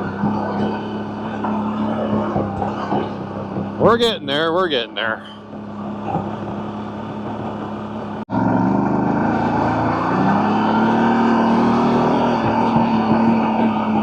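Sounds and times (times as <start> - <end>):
atv engine running: 0.0 - 14.0.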